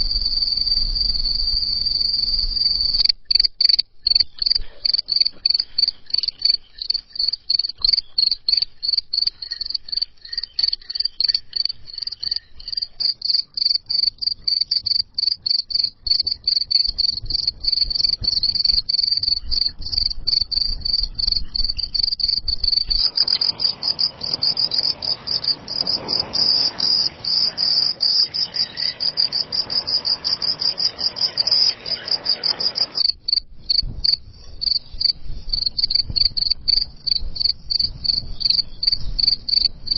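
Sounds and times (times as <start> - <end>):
crickets chirping: 0.0 - 39.9
faint hiss: 21.0 - 39.1.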